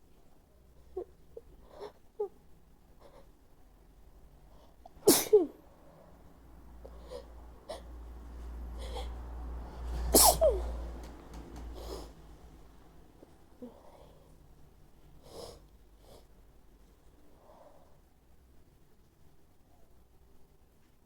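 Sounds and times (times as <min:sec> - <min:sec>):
quiet breathing: 0:04.2 - 0:05.0, 0:05.6 - 0:18.4.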